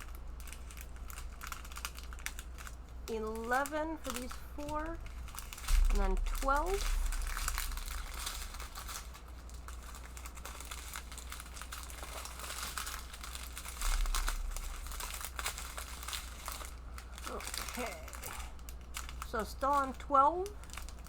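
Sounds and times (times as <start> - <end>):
plastic bags crinkling: 0.0 - 21.0.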